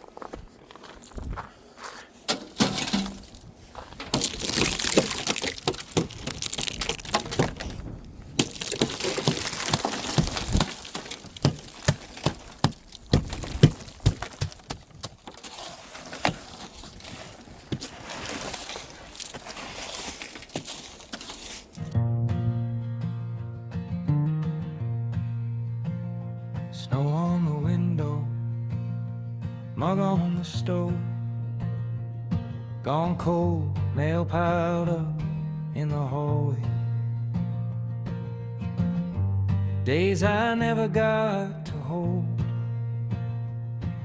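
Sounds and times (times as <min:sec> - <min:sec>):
scraping and brushing snow: 0:00.0 - 0:22.0
ice cracking and knocking: 0:02.3 - 0:22.0.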